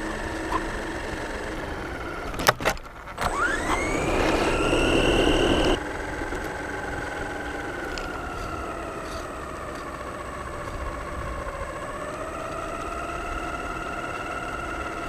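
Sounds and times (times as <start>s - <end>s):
model car motor whining: 0.0s - 15.0s.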